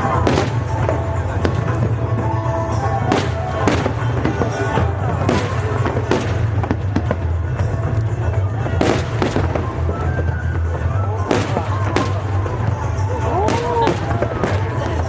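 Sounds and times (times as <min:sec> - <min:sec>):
fireworks bangs and cracks: 0:00.0 - 0:15.0.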